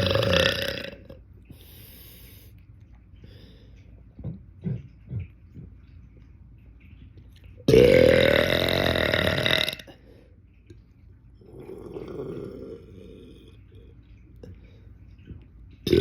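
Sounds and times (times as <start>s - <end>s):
man burping loudly: 0.0s - 1.2s, 7.7s - 10.0s.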